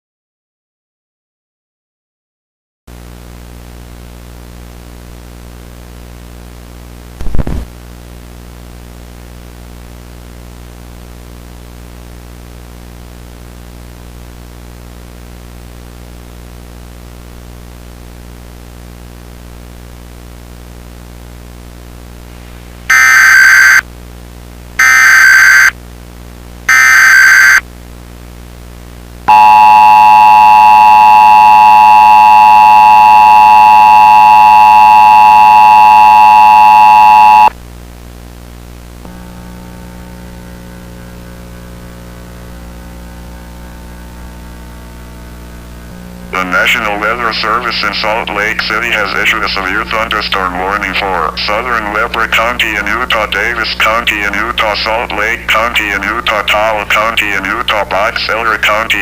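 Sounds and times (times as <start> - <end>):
brief crackle: 7.2 - 7.7
low hum: 21.8 - 23.0, 38.6 - 50.2
screeching digital data bursts: 22.9 - 23.8, 24.8 - 25.7, 26.7 - 27.6, 29.3 - 37.5
two-tone attention signal: 22.9 - 23.8, 24.8 - 25.7, 26.7 - 27.6, 29.3 - 37.5.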